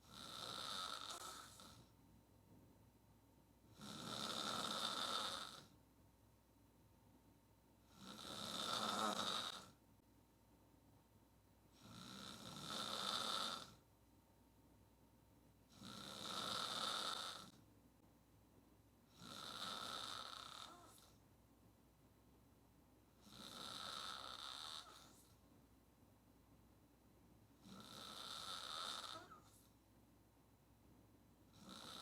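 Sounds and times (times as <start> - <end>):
woman snoring hard: 0.0 - 1.8, 3.8 - 5.7, 7.9 - 9.7, 11.8 - 13.8, 15.7 - 17.5, 19.1 - 21.0, 23.2 - 25.1, 27.6 - 29.5, 31.6 - 32.0.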